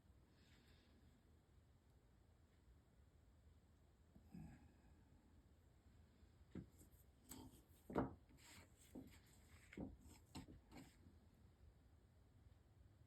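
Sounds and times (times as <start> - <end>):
small taps and scrapes: 6.5 - 11.0.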